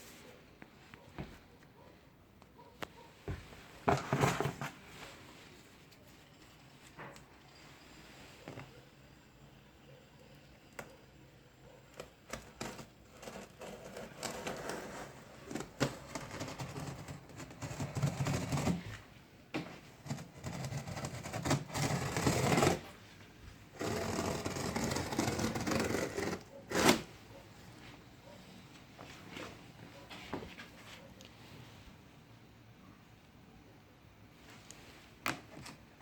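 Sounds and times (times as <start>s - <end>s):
cardboard and wrapping rustling: 3.3s - 7.0s.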